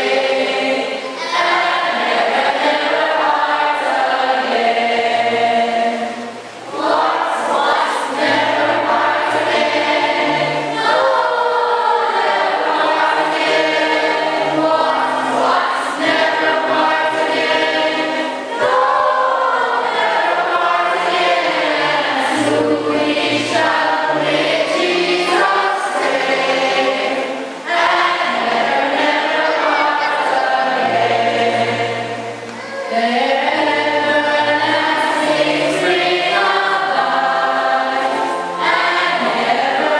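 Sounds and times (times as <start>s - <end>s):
group singing a hymn: 0.0s - 39.9s.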